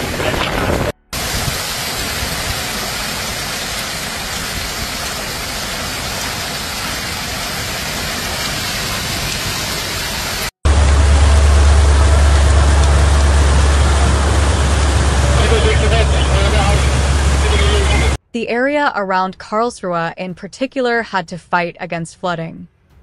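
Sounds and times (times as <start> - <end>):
heavy rain pouring: 0.0 - 18.2
steady low hum: 10.7 - 18.2.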